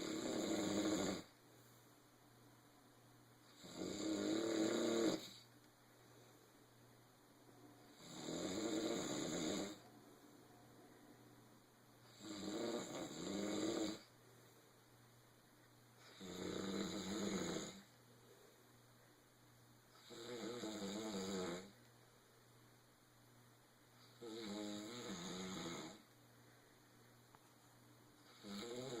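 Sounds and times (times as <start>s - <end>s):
person snoring: 0.0s - 1.3s, 3.4s - 5.5s, 7.8s - 9.8s, 12.0s - 14.1s, 16.0s - 17.9s, 19.9s - 21.8s, 24.0s - 26.0s, 28.2s - 29.0s
quiet breathing: 0.0s - 2.4s, 3.3s - 22.4s, 23.8s - 29.0s.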